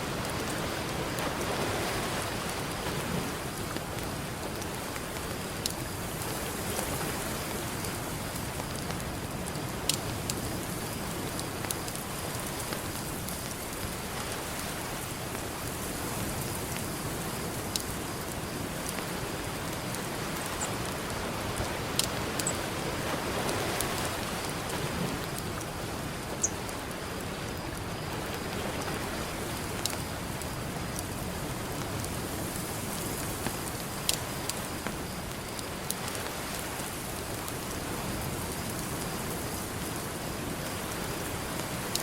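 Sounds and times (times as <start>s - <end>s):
ocean surf: 0.0s - 42.0s
campfire crackling: 0.1s - 42.0s.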